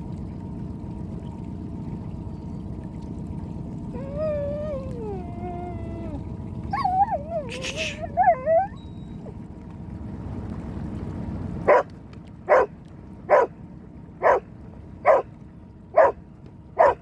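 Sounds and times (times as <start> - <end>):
steady low rumble: 0.0 - 17.0
dog barking: 11.7 - 11.9, 12.5 - 12.7, 13.3 - 13.5, 14.2 - 14.4, 15.0 - 15.3, 16.0 - 16.2, 16.8 - 17.0.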